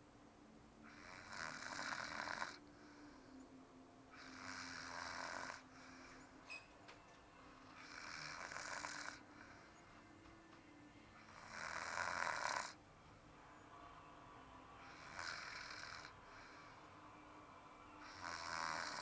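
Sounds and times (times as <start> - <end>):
woman snoring: 0.9 - 2.6, 4.1 - 6.1, 7.8 - 9.5, 11.2 - 12.8, 14.8 - 16.6, 18.0 - 19.0.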